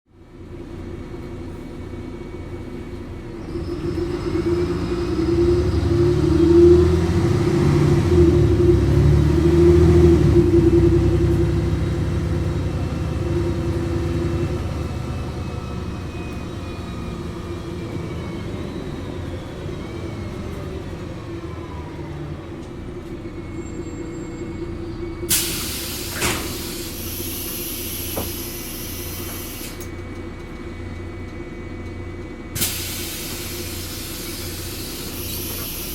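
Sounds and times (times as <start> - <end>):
bus diesel engine: 0.1 - 35.9
bus rattles: 0.3 - 35.9
compressed air hiss: 25.3 - 29.8, 32.6 - 35.9.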